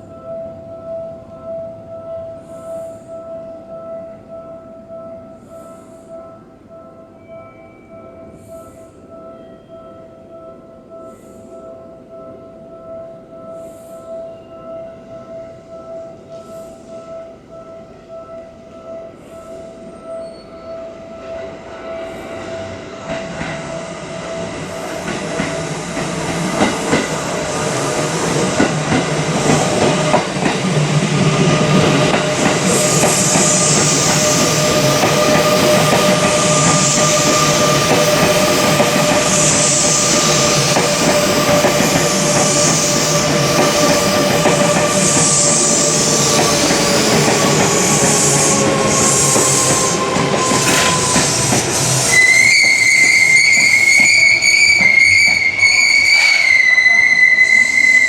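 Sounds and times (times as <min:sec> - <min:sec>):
electric train passing: 0:00.0 - 0:58.0
hiss: 0:32.4 - 0:54.2, 0:56.0 - 0:56.7.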